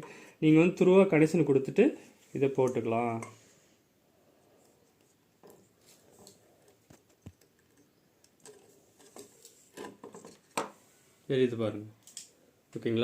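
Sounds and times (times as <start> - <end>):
faint clicks and handling knocks: 4.6 - 10.8.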